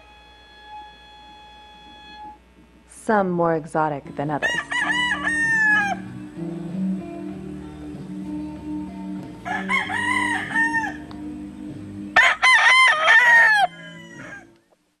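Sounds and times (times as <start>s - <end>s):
rooster crowing: 4.4s - 6.2s, 9.4s - 11.1s, 12.2s - 14.6s.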